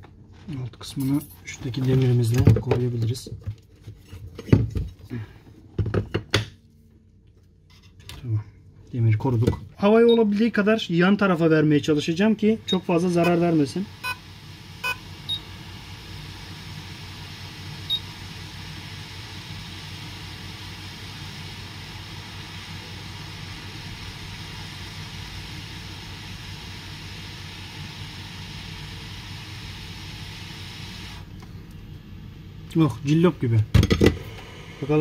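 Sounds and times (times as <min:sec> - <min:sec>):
hot air blower rushing: 0:34.0 - 0:35.0.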